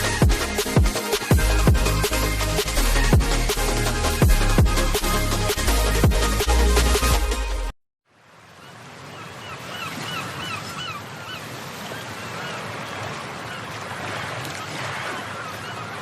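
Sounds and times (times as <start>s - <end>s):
steady rushing background: 0.0s - 7.6s
birds calling: 8.6s - 13.9s, 14.5s - 16.0s.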